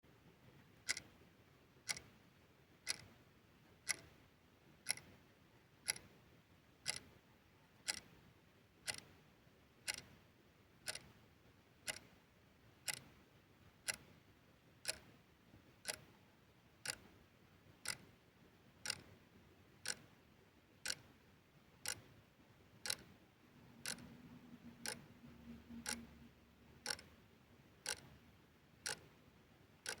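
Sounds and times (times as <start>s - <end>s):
clock ticking: 0.8s - 1.2s, 1.8s - 2.1s, 2.8s - 3.2s, 3.8s - 4.2s, 4.8s - 5.2s, 5.8s - 6.1s, 6.8s - 7.2s, 7.8s - 8.2s, 8.8s - 9.2s, 9.8s - 10.2s, 10.8s - 11.2s, 11.8s - 12.2s, 12.8s - 13.2s, 13.8s - 14.1s, 14.8s - 15.1s, 15.8s - 16.1s, 16.8s - 17.1s, 17.8s - 18.1s, 18.8s - 19.2s, 19.8s - 20.1s, 20.8s - 21.1s, 21.8s - 22.1s, 22.8s - 23.1s, 23.8s - 27.2s, 27.8s - 28.2s, 28.8s - 29.1s.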